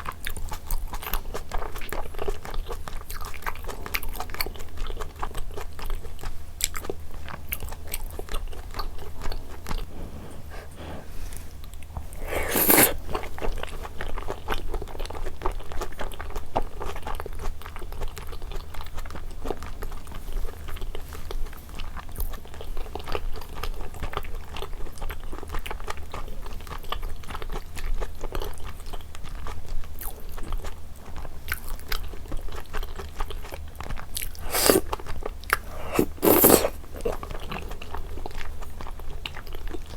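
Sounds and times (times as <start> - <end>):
person chewing food: 0.0 - 39.9
wet mouth clicks: 12.1 - 13.4, 34.4 - 34.9, 35.5 - 37.2.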